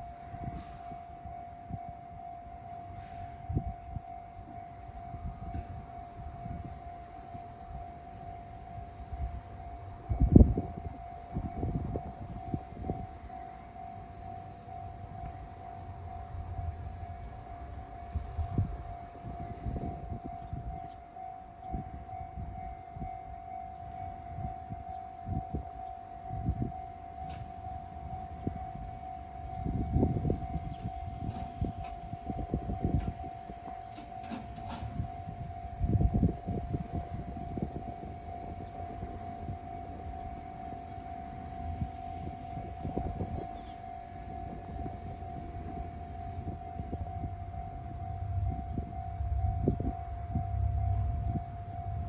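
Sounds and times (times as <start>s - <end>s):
level crossing alarm ringing: 0.0s - 52.0s
low rumbling: 41.8s - 52.0s.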